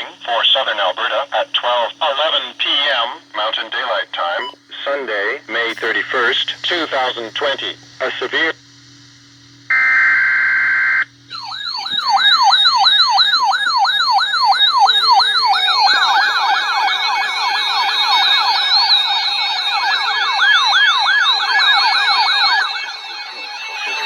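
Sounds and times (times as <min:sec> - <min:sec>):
siren falling sweeps: 0:11.3 - 0:24.0.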